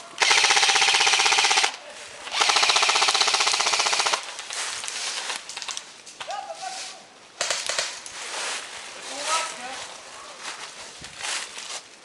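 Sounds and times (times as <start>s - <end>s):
airsoft gun firing bursts: 0.2s - 4.2s.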